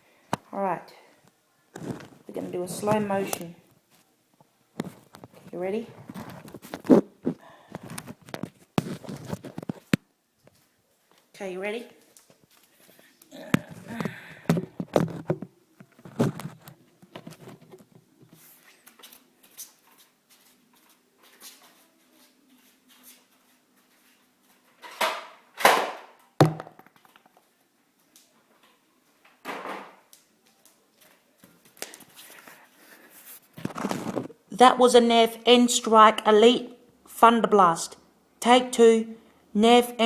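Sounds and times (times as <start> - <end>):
faint clicks and handling: 1.2 - 11.4
sharp thunk: 25.7 - 26.8.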